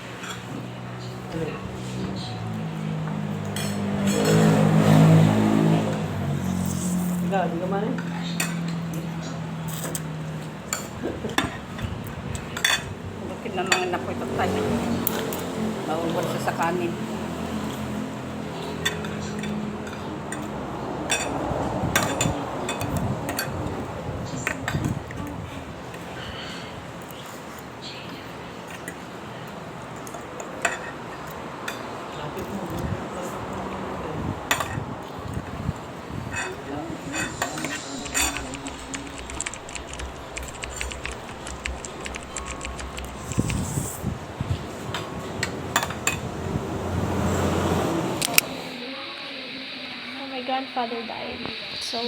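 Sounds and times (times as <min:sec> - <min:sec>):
dishes and cutlery clinking: 0:00.0 - 0:01.2, 0:03.2 - 0:04.7, 0:08.3 - 0:13.0, 0:18.6 - 0:20.5, 0:21.1 - 0:23.7, 0:30.0 - 0:32.6, 0:36.3 - 0:43.4
low background murmur: 0:05.6 - 0:52.0
steady low hum: 0:34.0 - 0:52.0
sharp clicks: 0:37.9 - 0:43.8.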